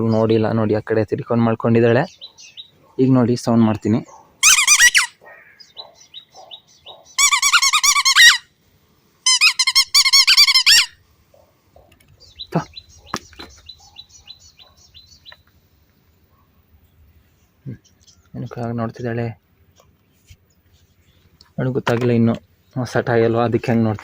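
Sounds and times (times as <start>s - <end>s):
squeaky dog toy squeaking: 4.4s - 5.2s, 7.2s - 8.5s, 9.2s - 11.0s.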